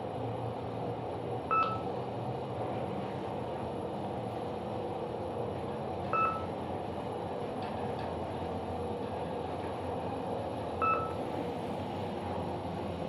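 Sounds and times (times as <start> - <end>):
elevator running hum: 0.0 - 13.0
short electronic beep: 1.5 - 1.8.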